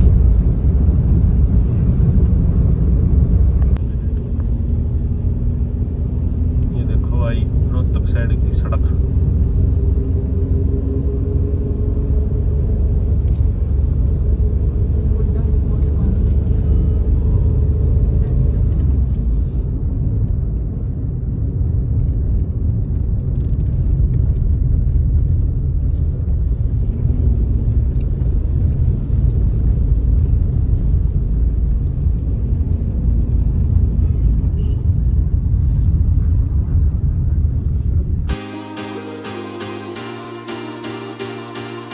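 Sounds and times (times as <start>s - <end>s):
car driving rumble: 0.0s - 38.3s
music: 38.3s - 41.9s.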